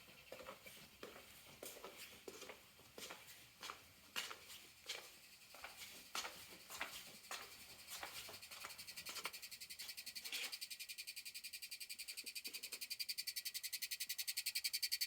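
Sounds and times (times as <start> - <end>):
high-pitched buzzing rattle: 5.2 - 15.0.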